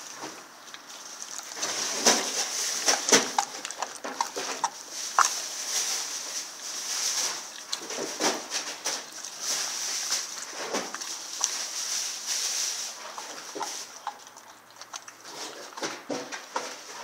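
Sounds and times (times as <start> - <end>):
dog chewing meat wetly: 0.0 - 17.0.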